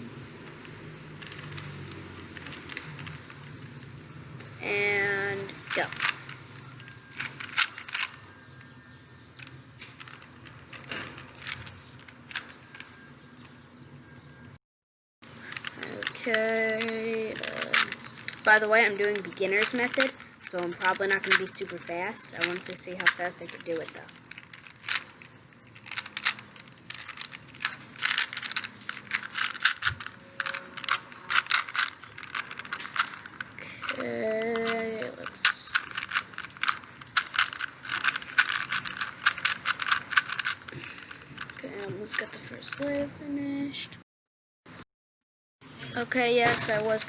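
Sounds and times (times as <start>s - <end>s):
puzzle cube layers clicking: 4.6s - 8.2s, 15.5s - 41.6s.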